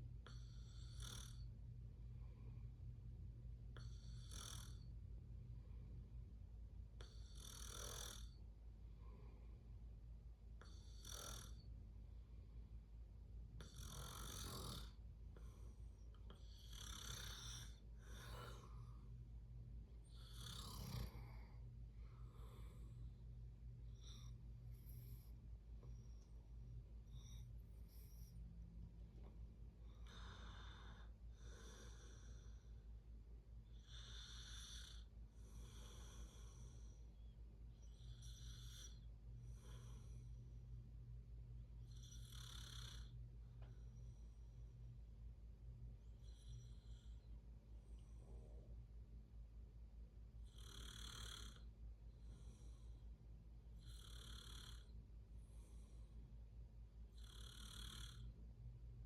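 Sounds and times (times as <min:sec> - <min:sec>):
person snoring softly: 0:00.0 - 0:06.2, 0:07.0 - 0:09.7, 0:10.6 - 0:11.7, 0:13.6 - 0:28.4, 0:29.1 - 0:33.0, 0:33.6 - 0:40.8, 0:41.6 - 0:45.0, 0:45.8 - 0:48.9, 0:50.4 - 0:56.2, 0:57.1 - 0:58.4
low steady hum: 0:00.0 - 0:07.4, 0:08.2 - 0:54.0, 0:54.7 - 0:57.4, 0:58.0 - 0:59.0
person snoring faintly: 0:00.2 - 0:01.5, 0:03.8 - 0:04.9, 0:07.0 - 0:08.4, 0:10.6 - 0:11.6, 0:13.6 - 0:19.1, 0:20.0 - 0:23.1, 0:29.2 - 0:32.8, 0:50.4 - 0:53.0, 0:53.8 - 0:56.1.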